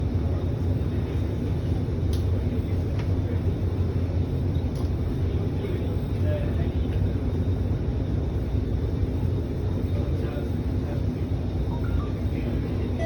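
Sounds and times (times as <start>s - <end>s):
train car hum and rumble: 0.0s - 13.0s.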